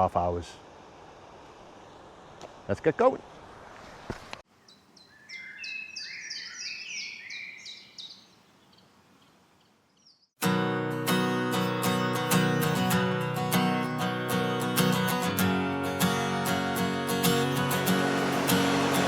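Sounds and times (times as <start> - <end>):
bird chirping and whistling: 5.0 - 8.3
strummed acoustic guitar music: 10.4 - 19.0.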